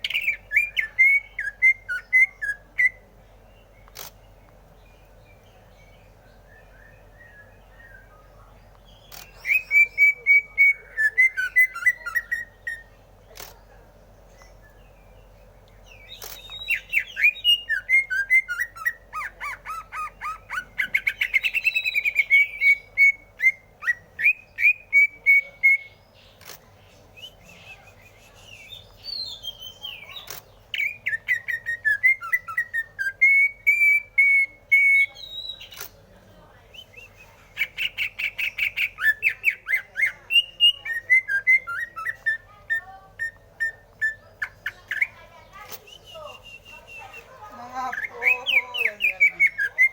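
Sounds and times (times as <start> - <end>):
bird singing whistled notes: 0.0 - 4.1, 4.8 - 12.9, 14.3 - 26.5, 27.1 - 35.9, 36.7 - 49.9
sharp clicks: 3.8 - 4.6, 9.0 - 9.4, 13.3 - 13.6, 15.6 - 16.6, 26.4 - 26.7, 30.2 - 30.5, 35.6 - 36.0.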